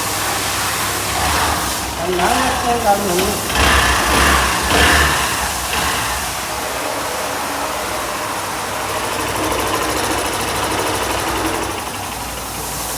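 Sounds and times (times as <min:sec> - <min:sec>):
motorcycle engine idling: 0:01.3 - 0:12.9.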